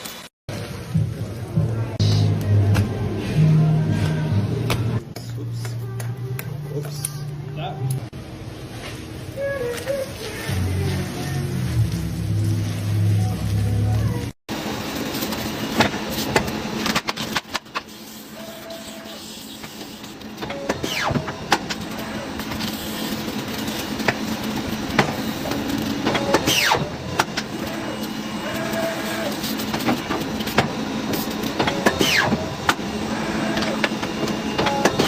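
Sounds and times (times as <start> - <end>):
machinery humming: 0.0 - 35.0
machinery clicks and clatter: 15.0 - 18.0, 19.3 - 35.0.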